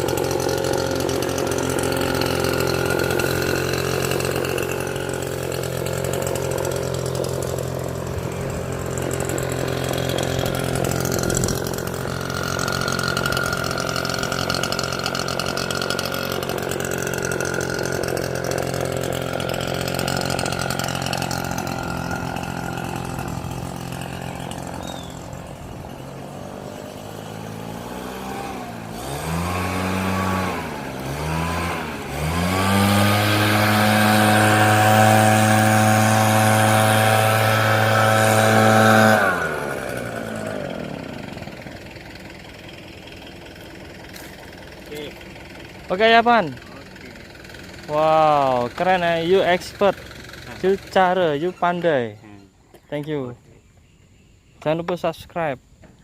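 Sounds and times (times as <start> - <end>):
leaf blower engine revving: 0.0 - 52.4.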